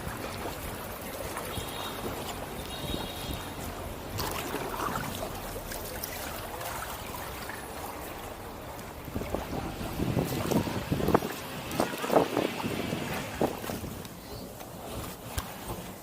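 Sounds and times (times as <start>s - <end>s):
water dripping off paddle: 0.0s - 15.8s
paddle swishes: 0.0s - 16.0s
water splashing against hull: 0.0s - 16.0s.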